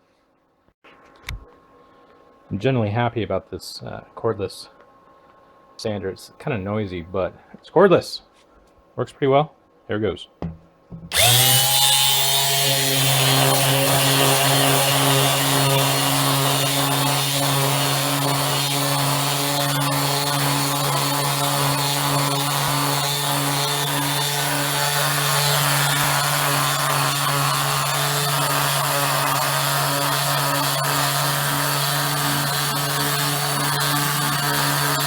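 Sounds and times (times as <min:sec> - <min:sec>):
palm sander on wood: 0:10.5 - 0:35.0.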